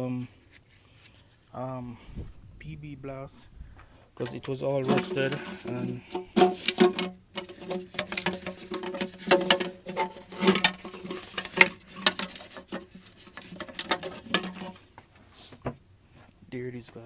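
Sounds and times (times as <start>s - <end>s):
tool clicking and scraping on metal: 4.2s - 15.6s.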